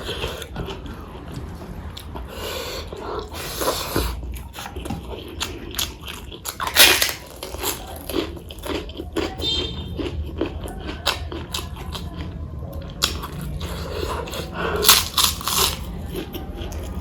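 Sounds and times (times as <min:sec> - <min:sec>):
person chewing and biting: 0:00.0 - 0:17.0
loud crunch: 0:05.4 - 0:12.0, 0:14.2 - 0:15.9.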